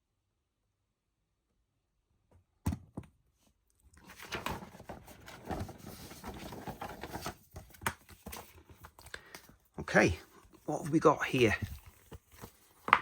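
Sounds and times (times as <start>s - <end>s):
paper rustling and crinkling: 4.0s - 13.0s.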